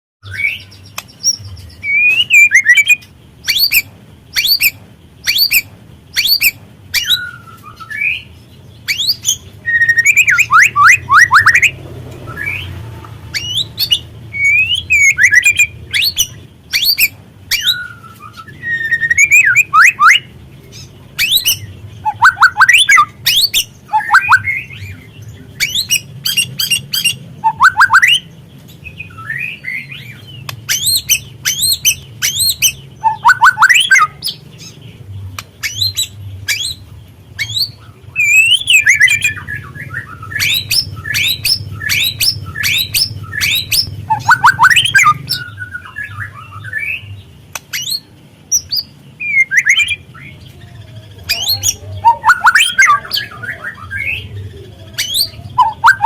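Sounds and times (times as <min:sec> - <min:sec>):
bird clicking chips and chatter: 0:35.3 - 0:36.6, 0:47.5 - 0:48.7.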